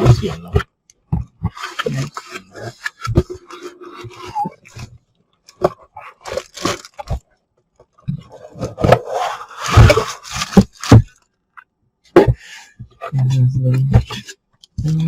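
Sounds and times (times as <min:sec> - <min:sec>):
parts scraping: 0:00.0 - 0:07.2, 0:08.1 - 0:11.2
packaging crinkling: 0:06.1 - 0:07.2.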